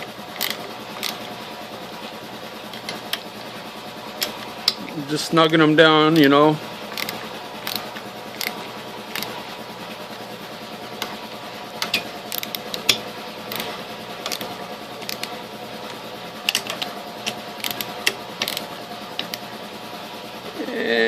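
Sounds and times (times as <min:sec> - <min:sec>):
steady low hum: 0:00.0 - 0:21.0
wrench clicking on metal bolts: 0:00.3 - 0:01.2, 0:05.4 - 0:06.4, 0:07.0 - 0:09.3, 0:11.8 - 0:15.3, 0:16.5 - 0:19.4.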